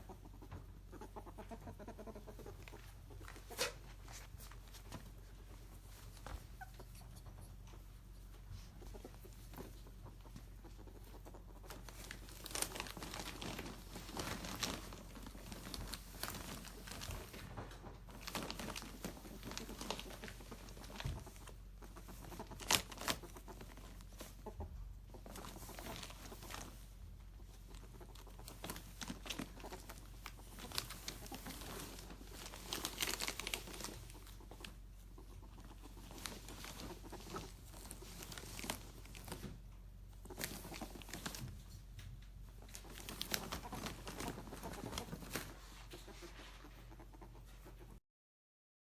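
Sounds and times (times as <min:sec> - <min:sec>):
play tunnel crinkling and rustling: 0:07.7 - 0:46.8.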